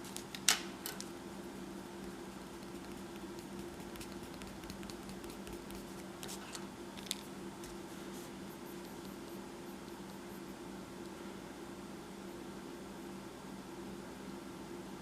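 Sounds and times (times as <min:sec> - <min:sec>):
pencil scratching on paper: 0:02.3 - 0:06.4, 0:08.2 - 0:10.6.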